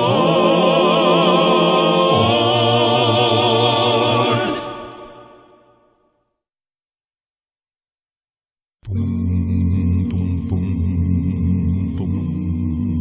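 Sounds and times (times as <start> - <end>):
vocal quartet singing a cappella: 0.0 - 5.6, 8.9 - 13.0.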